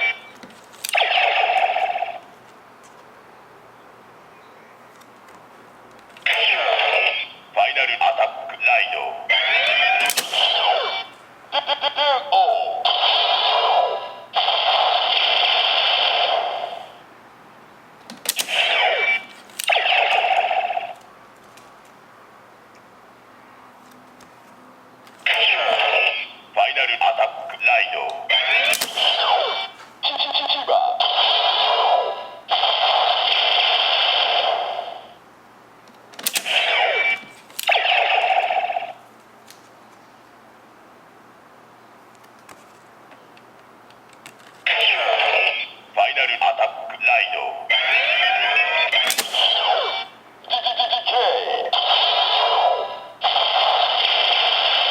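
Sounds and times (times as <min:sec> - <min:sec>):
toy belt electronic sound effects: 0:00.0 - 0:02.2, 0:06.2 - 0:16.9, 0:18.3 - 0:21.0, 0:25.2 - 0:35.2, 0:36.3 - 0:39.0, 0:44.7 - 0:54.9
sharp clicks: 0:10.0 - 0:10.7, 0:28.0 - 0:29.4, 0:35.8 - 0:36.8, 0:48.9 - 0:49.6.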